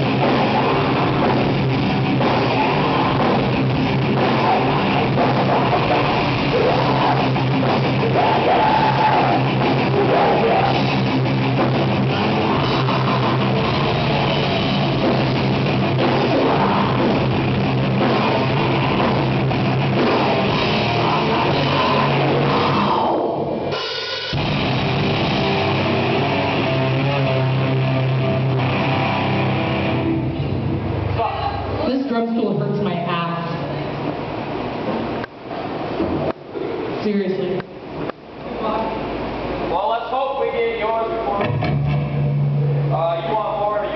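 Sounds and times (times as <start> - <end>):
drum kit with cymbals: 0.0 - 30.5
distorted electric guitars: 0.0 - 31.9, 40.8 - 43.9.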